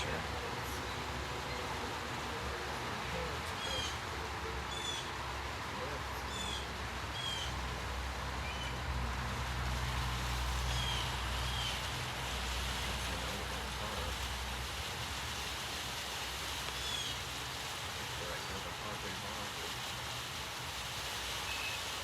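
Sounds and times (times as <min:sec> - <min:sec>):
steady outdoor hiss: 0:00.0 - 0:22.0
bird chirping: 0:03.4 - 0:04.0, 0:04.7 - 0:05.1, 0:06.2 - 0:07.6, 0:08.4 - 0:08.8, 0:16.8 - 0:17.2.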